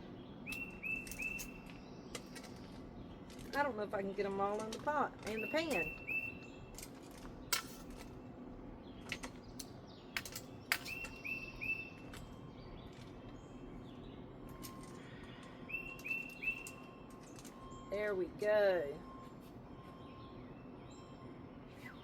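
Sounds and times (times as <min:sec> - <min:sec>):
bird calling: 0:00.0 - 0:02.5, 0:05.2 - 0:06.7, 0:10.7 - 0:12.7, 0:14.9 - 0:19.3.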